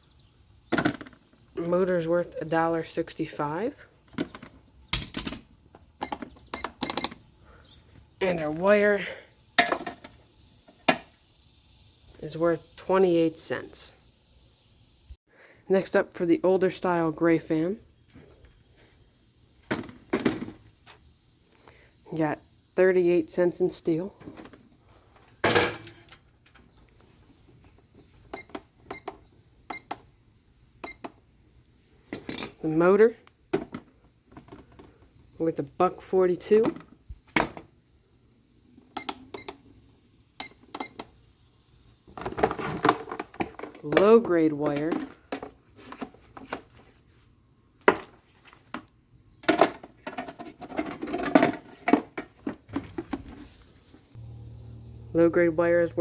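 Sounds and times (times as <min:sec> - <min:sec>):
keypad beeps with clicks: 0:06.0 - 0:07.2, 0:28.3 - 0:29.1, 0:29.7 - 0:29.9, 0:30.8 - 0:31.1, 0:39.0 - 0:39.6.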